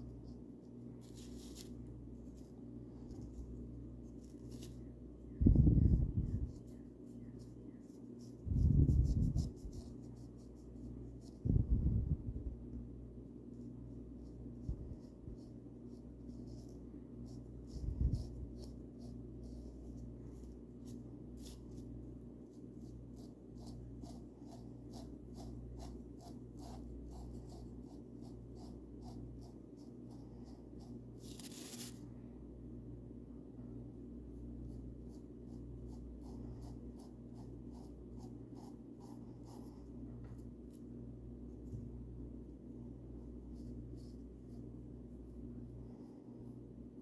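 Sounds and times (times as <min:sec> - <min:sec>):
paintbrush brushing on wood: 0:00.0 - 0:04.9, 0:05.8 - 0:11.4, 0:13.6 - 0:32.0
steady low hum: 0:00.0 - 0:47.0.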